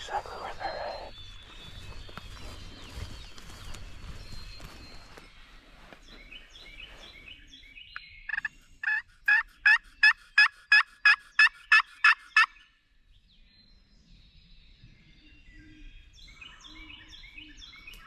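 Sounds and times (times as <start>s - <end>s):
small birds chirping: 0.0s - 18.0s
turkey yelping: 8.3s - 12.5s.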